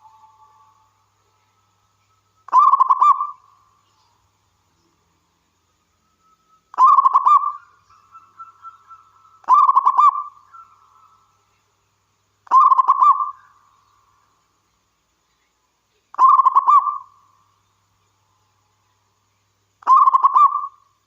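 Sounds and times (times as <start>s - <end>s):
dove cooing: 2.5s - 3.4s, 6.8s - 7.6s, 8.2s - 10.7s, 12.5s - 13.4s, 16.2s - 17.1s, 19.8s - 20.8s.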